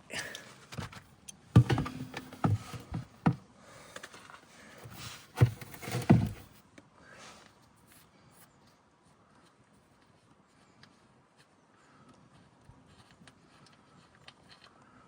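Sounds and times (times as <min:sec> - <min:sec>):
hand tools knocking and clunking: 0:01.6 - 0:03.4, 0:04.9 - 0:06.5.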